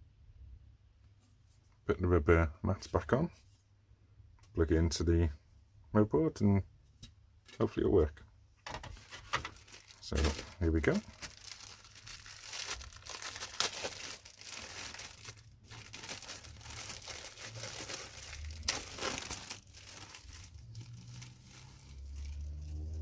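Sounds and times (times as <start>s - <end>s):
plastic packaging crinkling: 8.7s - 23.0s.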